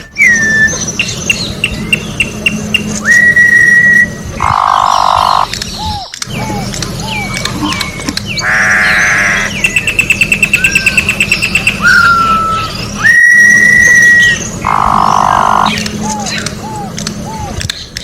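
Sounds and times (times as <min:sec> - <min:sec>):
bird singing varied song: 0:00.0 - 0:18.0.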